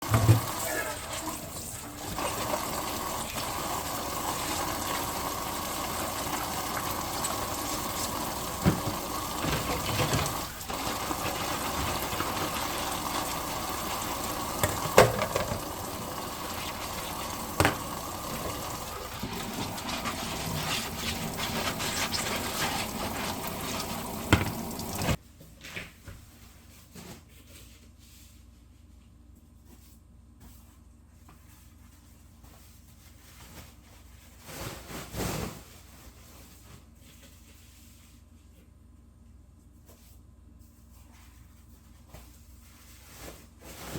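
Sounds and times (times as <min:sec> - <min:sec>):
water running from tap: 0:00.0 - 0:25.2.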